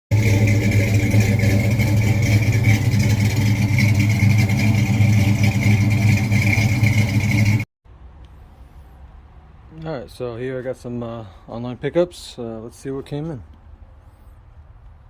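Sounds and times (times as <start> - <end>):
car engine running loudly: 0.1 - 7.7.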